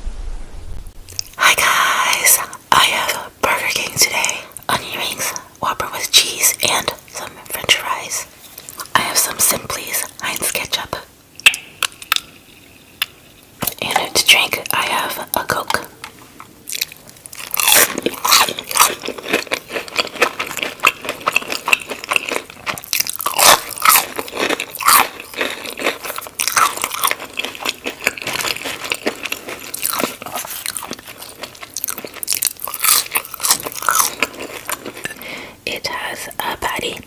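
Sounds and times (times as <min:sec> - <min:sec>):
crunching and chewing food: 0:06.4 - 0:10.8, 0:11.4 - 0:35.5.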